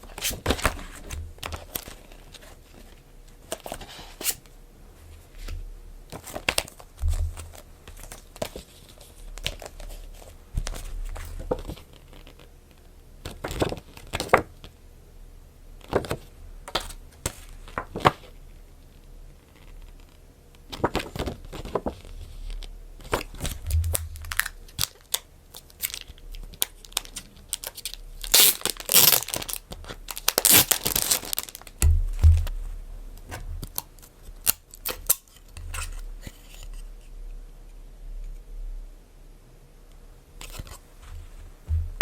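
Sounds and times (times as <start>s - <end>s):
wrapping crinkling and tearing: 23.1s - 32.4s
items set down thumping: 41.1s - 42.0s.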